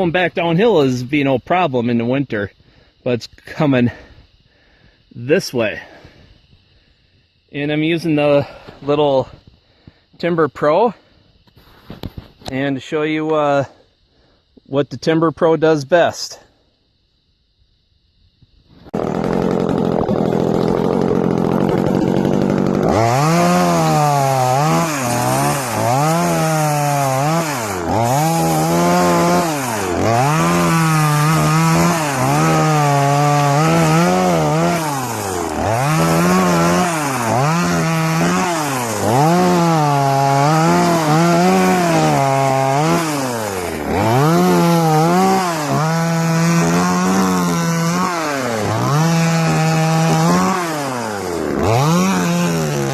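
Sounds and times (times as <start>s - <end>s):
chainsaw revving: 18.9s - 52.9s.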